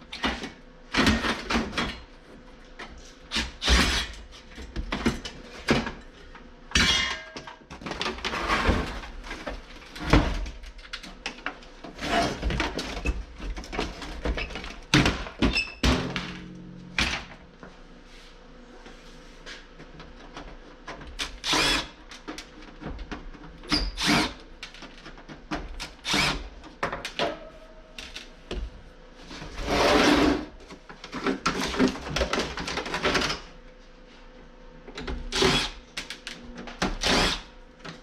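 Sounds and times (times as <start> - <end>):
power drill running: 24.0 - 24.3, 26.0 - 26.4, 35.4 - 35.8, 37.0 - 37.5.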